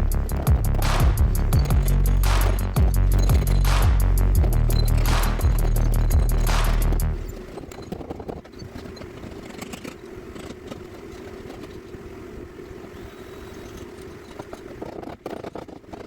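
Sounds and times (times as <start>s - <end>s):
engine humming: 0.0s - 7.8s.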